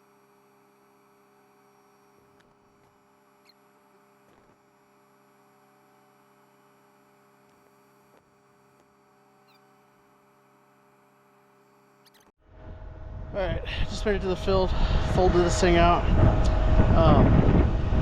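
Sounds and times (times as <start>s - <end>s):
tiny brief chirps: 12.0s - 12.3s.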